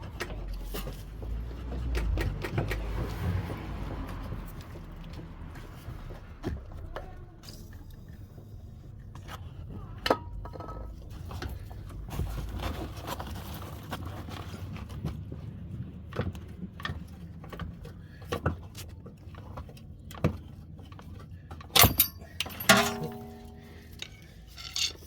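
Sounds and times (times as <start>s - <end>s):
metal tools clinking: 21.7s - 25.0s
sharp metallic clanks: 21.7s - 25.0s.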